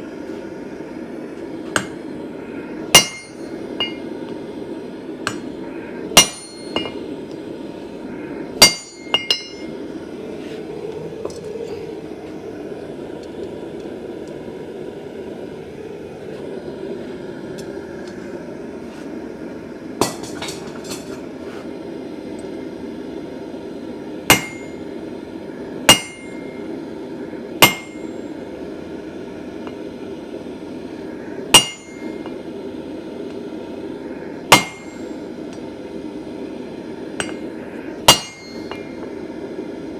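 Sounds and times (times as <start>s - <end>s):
hammer striking steel on anvil: 1.7s - 2.0s, 2.9s - 4.1s, 5.3s - 5.6s, 6.2s - 7.1s, 8.6s - 9.7s, 20.0s - 21.1s, 24.3s - 24.8s, 25.9s - 26.6s, 27.6s - 28.2s, 31.5s - 32.4s, 34.5s - 35.2s, 37.2s - 37.5s, 38.1s - 39.1s.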